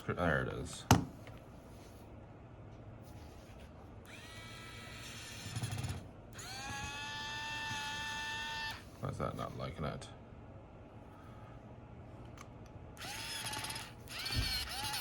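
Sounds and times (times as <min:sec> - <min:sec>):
electric screwdriver whining: 0:04.1 - 0:08.8, 0:13.0 - 0:15.0.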